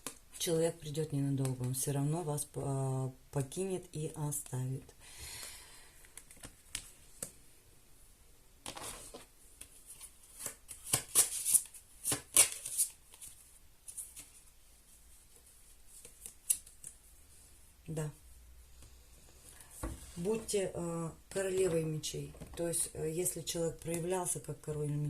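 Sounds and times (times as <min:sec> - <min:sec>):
cards being shuffled: 0:06.0 - 0:07.3, 0:08.6 - 0:14.5, 0:15.3 - 0:17.0.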